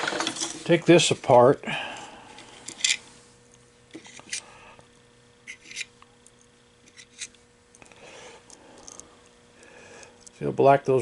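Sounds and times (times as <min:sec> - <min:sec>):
faint steady hum: 0:00.0 - 0:11.0
small parts clicking: 0:05.5 - 0:10.4.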